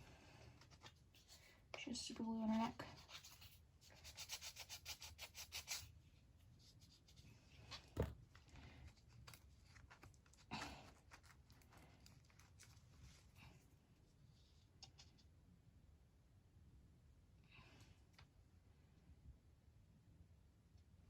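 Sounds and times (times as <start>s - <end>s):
scratching strokes: 2.7s - 7.8s.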